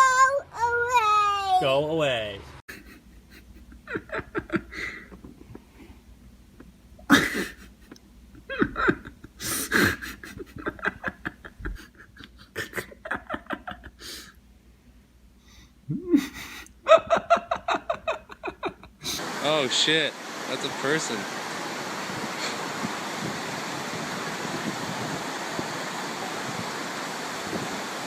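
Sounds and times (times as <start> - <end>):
person laughing: 2.7 - 5.6, 6.6 - 14.4, 15.9 - 19.2
breathy wordless vocal sounds: 15.9 - 16.7.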